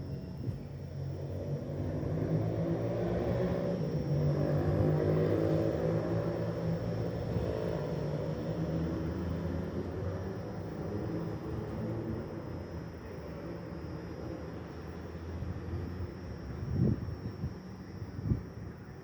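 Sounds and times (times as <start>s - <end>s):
engine drone: 0.0s - 19.0s.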